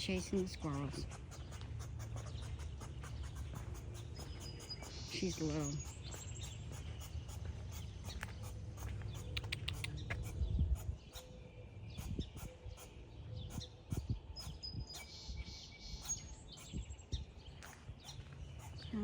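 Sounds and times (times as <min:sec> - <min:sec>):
small birds chirping: 0:00.0 - 0:19.0
low rumbling on microphone: 0:00.9 - 0:15.5.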